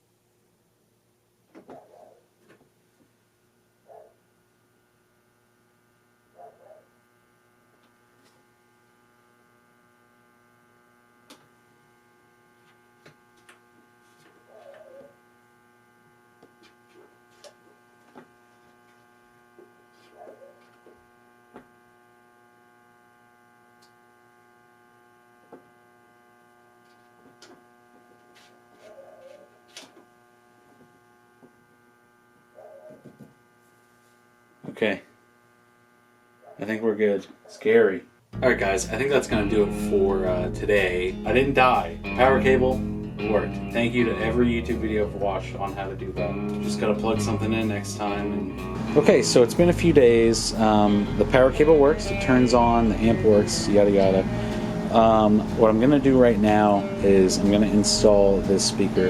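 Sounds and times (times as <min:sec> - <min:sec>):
faint amplifier mains hum: 0:00.0 - 0:59.0.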